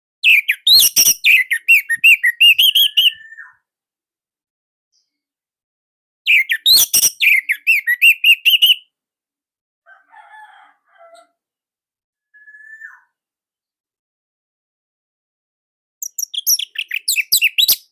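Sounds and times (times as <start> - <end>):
faint bird twittering: 12.2 - 13.2.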